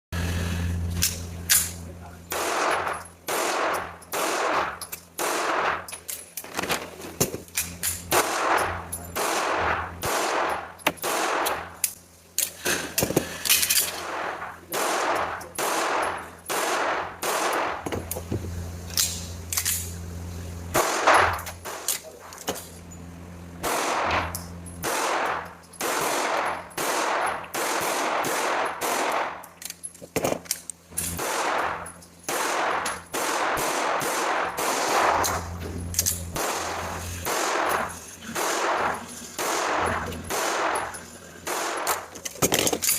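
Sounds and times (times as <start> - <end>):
steady low hum: 0.1 - 42.9
pistol shots: 2.3 - 5.9, 8.0 - 11.8, 13.9 - 18.1, 20.7 - 22.6, 23.6 - 29.5, 31.0 - 42.7.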